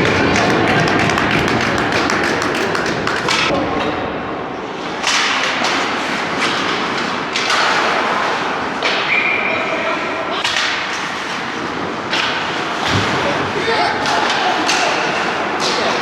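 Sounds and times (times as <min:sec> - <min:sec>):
hockey stick hitting puck: 0:00.0 - 0:03.5, 0:05.0 - 0:08.2, 0:10.4 - 0:11.4, 0:12.1 - 0:13.2
noisy rink din: 0:00.0 - 0:16.0.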